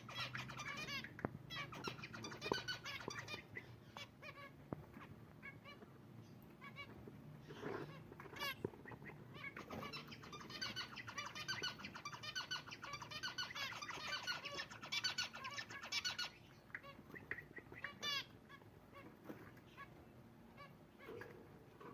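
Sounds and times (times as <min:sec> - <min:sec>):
finches chirping: 0:00.0 - 0:21.9.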